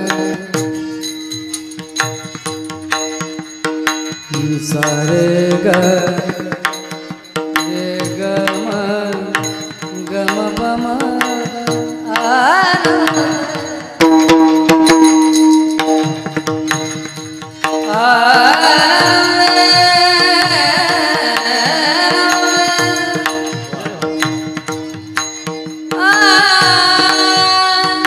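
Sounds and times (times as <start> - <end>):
person singing wordless vocals: 0.0 - 0.8, 4.3 - 14.2, 17.7 - 24.6, 26.0 - 28.0
tabla strokes: 0.0 - 28.0.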